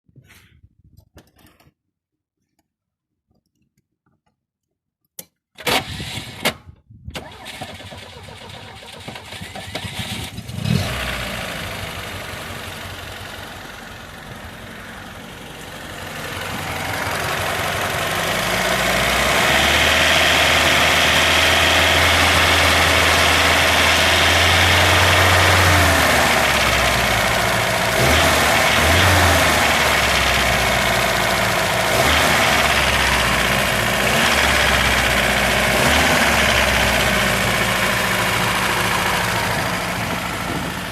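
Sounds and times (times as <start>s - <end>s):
car engine cranking and idling: 7.2s - 40.9s
engine revving: 7.2s - 40.9s.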